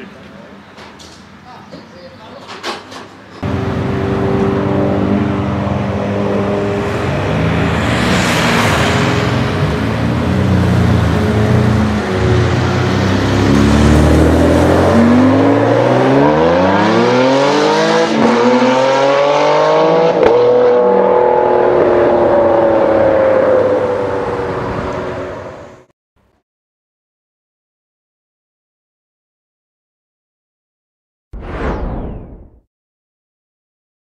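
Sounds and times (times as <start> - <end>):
car engine revving: 3.4 - 25.6.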